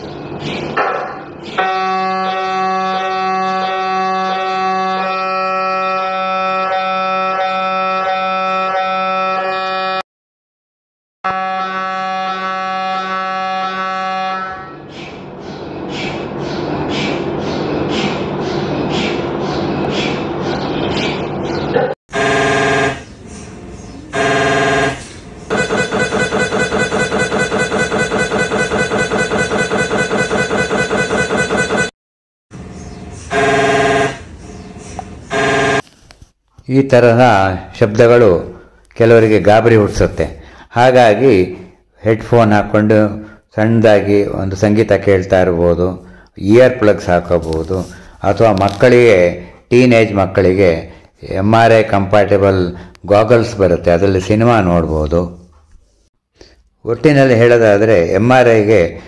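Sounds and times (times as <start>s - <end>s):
mri scanner buzzing: 24.2s - 31.9s.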